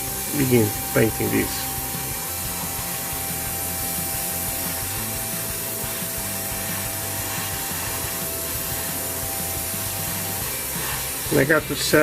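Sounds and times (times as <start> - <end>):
airbrush air hiss: 0.0 - 12.0
compressor humming: 0.0 - 12.0.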